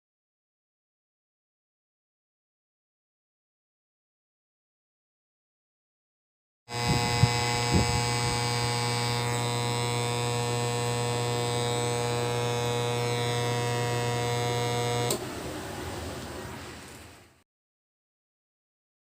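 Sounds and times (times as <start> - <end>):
speaker electrical hum: 6.7 - 17.2.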